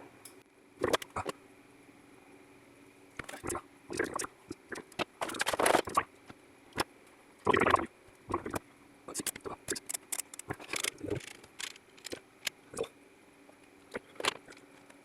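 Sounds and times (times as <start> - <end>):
tools scraping: 9.2 - 12.2
small tools clicking: 9.2 - 12.6.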